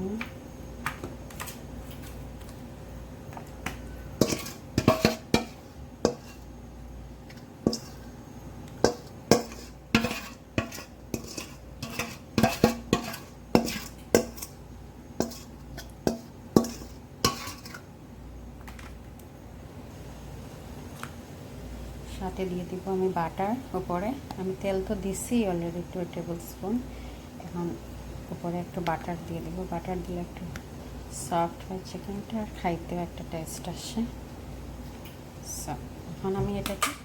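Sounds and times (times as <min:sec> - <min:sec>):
metal utensils and dishes clinking: 0:04.2 - 0:06.4, 0:08.8 - 0:14.6, 0:15.2 - 0:17.8.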